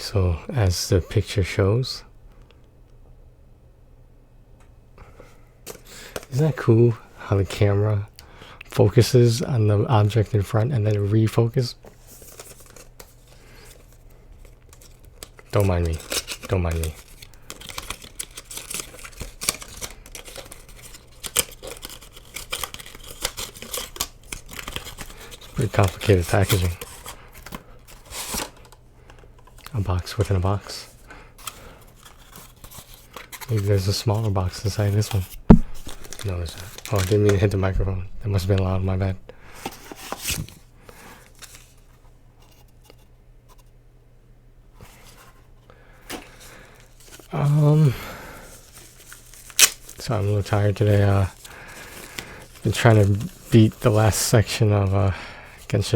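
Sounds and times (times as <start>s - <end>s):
packaging rustling and scraping: 11.8s - 43.7s, 44.8s - 55.9s.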